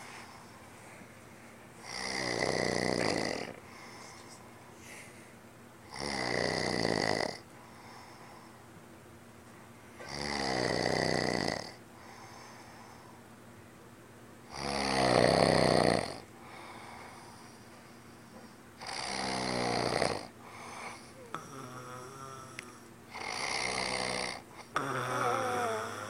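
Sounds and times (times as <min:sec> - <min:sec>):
quiet breathing: 0:00.0 - 0:05.5, 0:07.4 - 0:08.7, 0:11.7 - 0:13.3, 0:16.3 - 0:18.9, 0:20.3 - 0:23.6
man snoring: 0:01.8 - 0:03.6, 0:05.9 - 0:07.4, 0:10.0 - 0:11.8, 0:14.5 - 0:17.4, 0:18.8 - 0:26.0.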